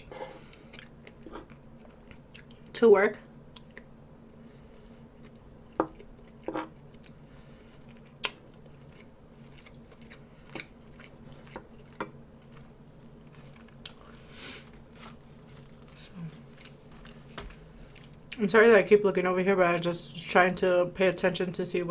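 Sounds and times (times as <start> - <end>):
person chewing: 0.0 - 2.7, 4.6 - 17.3
faint low hum: 0.0 - 21.9.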